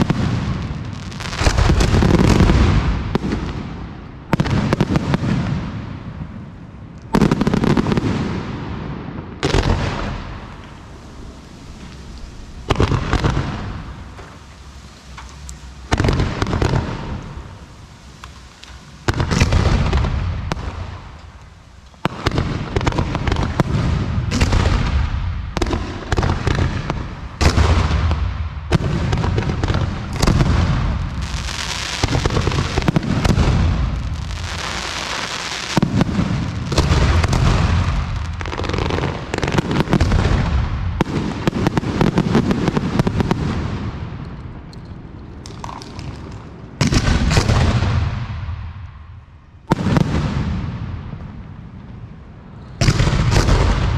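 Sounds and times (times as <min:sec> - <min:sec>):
fireworks bursting: 0:00.0 - 0:53.9.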